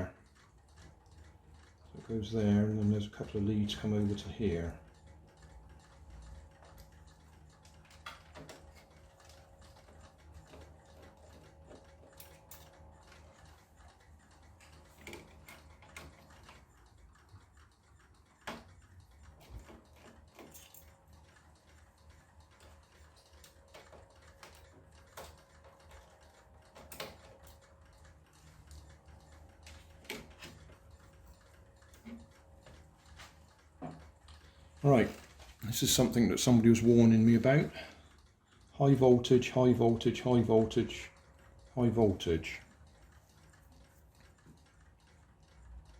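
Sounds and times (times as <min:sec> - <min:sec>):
faint clicks and taps: 0:00.0 - 0:45.9.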